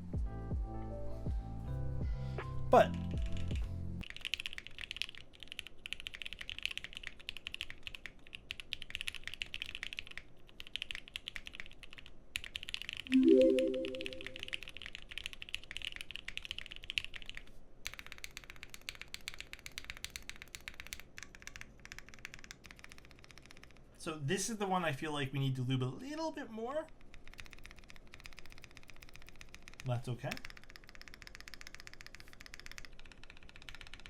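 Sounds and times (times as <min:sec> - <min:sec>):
mechanical keyboard clacking: 0:03.2 - 0:13.1, 0:14.4 - 0:23.8, 0:27.1 - 0:34.0
brief pitched tone: 0:13.1 - 0:14.6.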